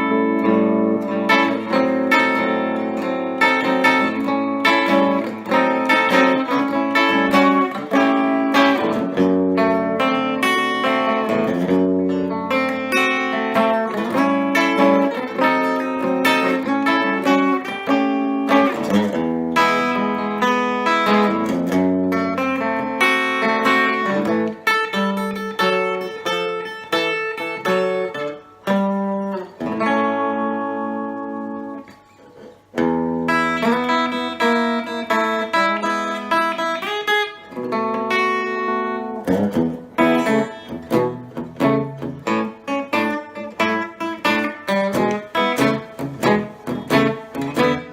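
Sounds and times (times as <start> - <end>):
electric guitar strummed and picked: 0.0 - 47.9.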